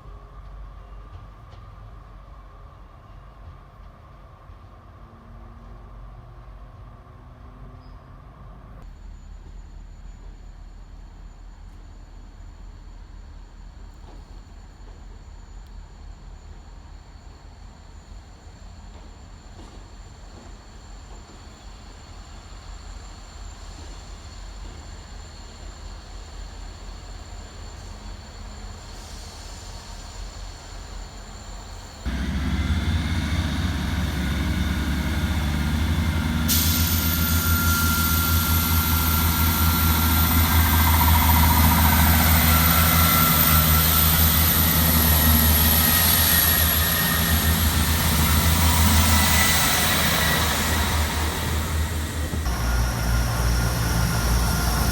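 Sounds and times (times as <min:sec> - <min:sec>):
diesel engine rumble: 0:32.1 - 0:54.9
thin whining tones: 0:36.1 - 0:54.9.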